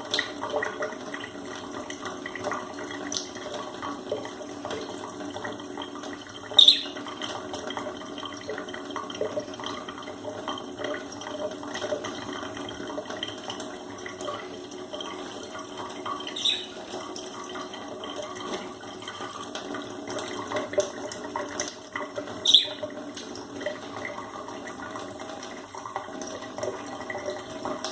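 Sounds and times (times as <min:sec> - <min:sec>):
tap water running: 0:00.0 - 0:27.9
budgerigars chirping: 0:06.6 - 0:06.9, 0:16.4 - 0:16.7, 0:22.5 - 0:22.8.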